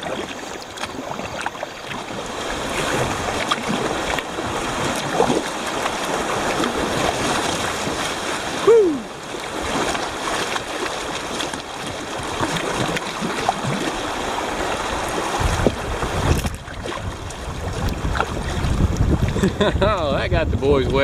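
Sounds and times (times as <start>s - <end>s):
river water rushing and splashing: 0.0s - 19.8s
wind buffeting microphone: 11.8s - 21.0s.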